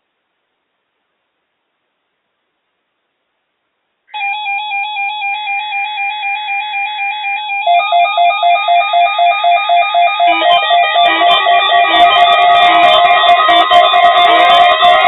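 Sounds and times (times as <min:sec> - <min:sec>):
electronic alarm beeps: 0:04.2 - 0:15.0
louder beeping: 0:04.2 - 0:15.0.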